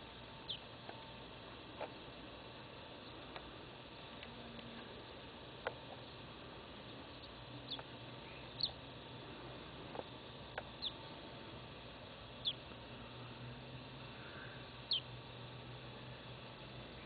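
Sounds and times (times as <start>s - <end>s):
bird chirping: 0.4s - 0.7s, 6.9s - 8.8s, 10.6s - 11.0s, 12.4s - 12.6s, 14.8s - 15.1s.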